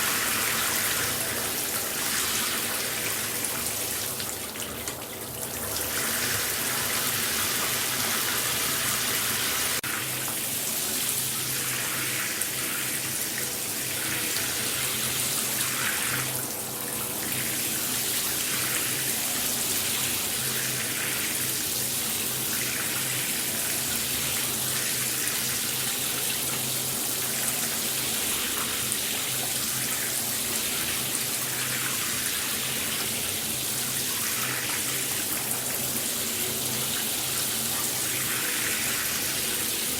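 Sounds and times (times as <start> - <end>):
shower spray running: 0.0 - 4.3, 5.8 - 16.4.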